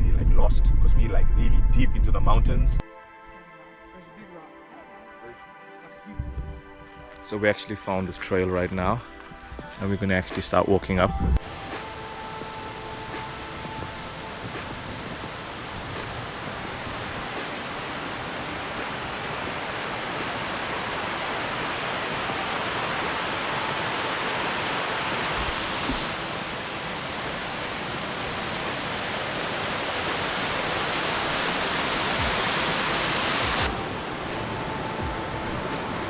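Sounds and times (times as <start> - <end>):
rush of falling water: 11.4 - 36.0.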